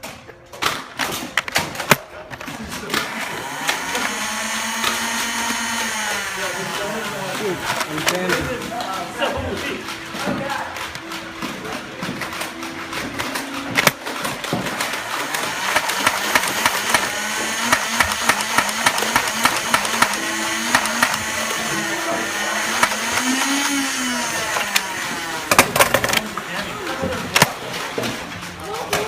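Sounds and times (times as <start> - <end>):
small electric motors whining: 2.9 - 27.6
dense rapid clicking: 12.1 - 26.5.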